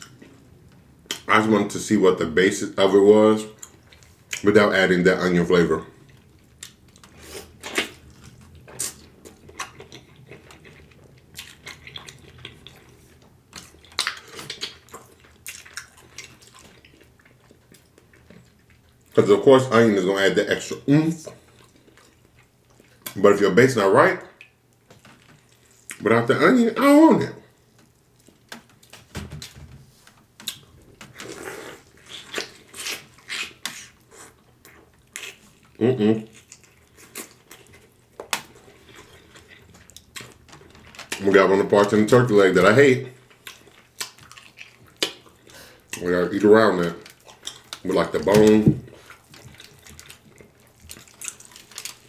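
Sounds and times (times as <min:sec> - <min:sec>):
wet chewing and smacking: 0:06.0 - 0:19.2, 0:21.3 - 0:23.2, 0:24.4 - 0:26.0, 0:27.5 - 0:42.1, 0:42.7 - 0:52.0.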